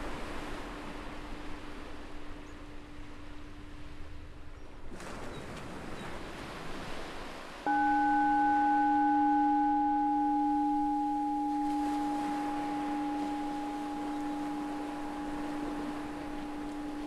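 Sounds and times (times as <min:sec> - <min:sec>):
ocean surf washing: 0:00.0 - 0:17.0
meditation bell ringing: 0:07.7 - 0:17.0.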